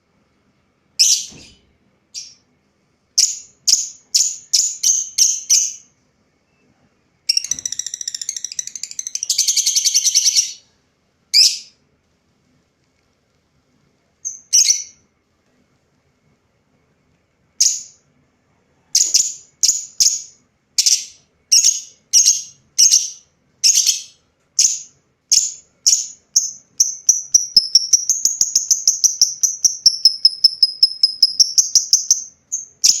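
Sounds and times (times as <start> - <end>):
lovebird chirping shrilly: 7.3 - 10.6, 14.2 - 15.0.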